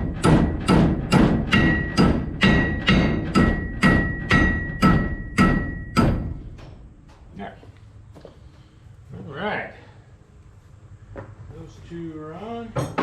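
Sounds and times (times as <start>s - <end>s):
hammer striking steel: 0.0s - 7.2s.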